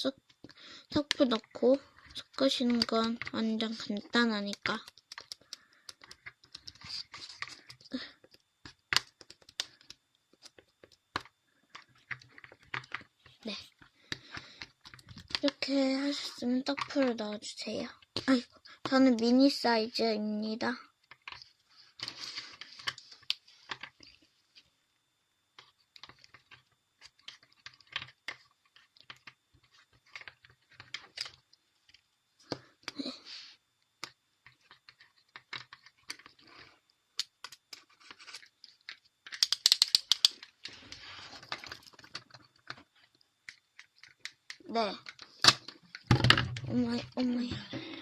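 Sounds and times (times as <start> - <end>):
sharp clicks of slime: 39.3 - 40.3.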